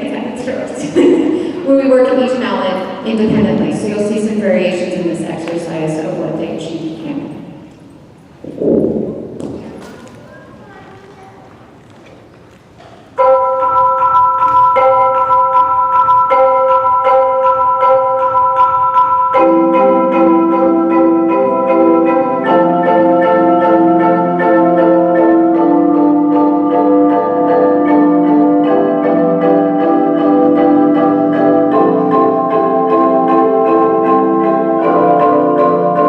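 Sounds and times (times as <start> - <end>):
mallet percussion ensemble: 13.2 - 36.0.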